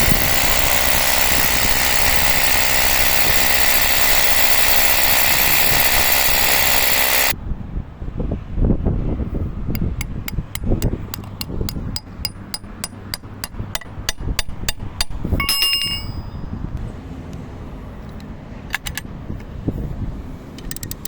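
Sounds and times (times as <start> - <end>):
ringing metal strike: 12.0 - 16.5.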